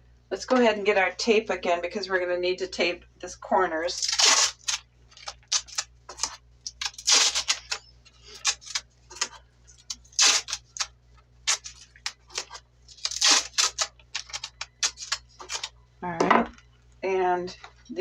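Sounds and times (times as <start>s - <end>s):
tape pulled off roll: 4.0s - 9.3s, 9.9s - 10.9s, 11.5s - 15.7s.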